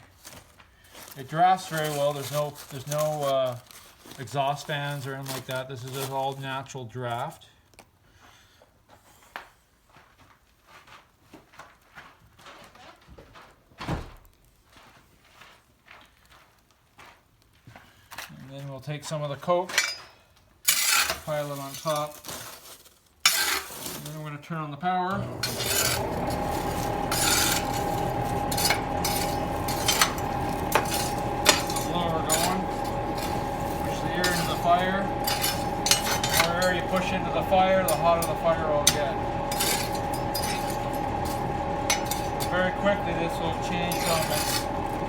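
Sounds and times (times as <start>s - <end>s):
electric blower rushing air: 25.1s - 45.0s
fire crackling: 25.1s - 45.0s.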